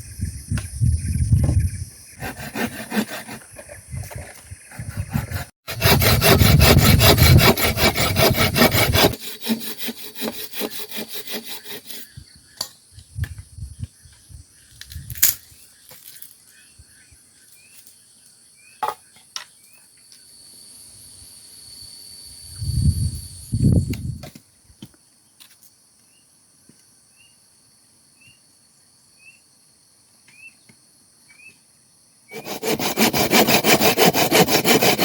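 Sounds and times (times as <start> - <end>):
hand saw cutting wood: 2.2 - 12.1, 32.3 - 35.0.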